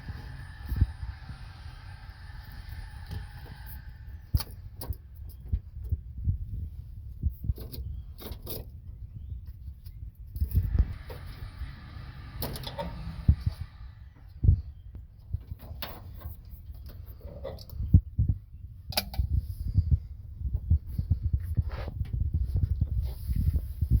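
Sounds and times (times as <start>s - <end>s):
rustling scrape: 20.9s - 24.0s.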